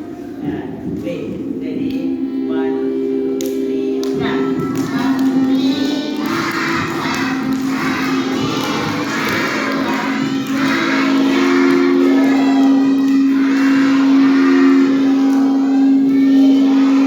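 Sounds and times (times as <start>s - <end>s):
steady low tone: 0.0s - 17.0s
young children shouting and chattering: 5.9s - 17.0s.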